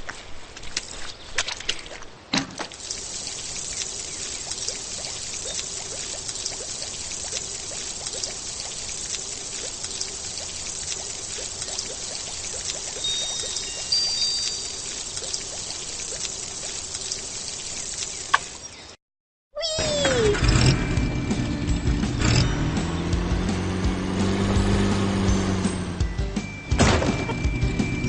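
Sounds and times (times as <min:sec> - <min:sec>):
water pouring: 0:02.6 - 0:18.8
bubbling chirps: 0:02.8 - 0:18.8.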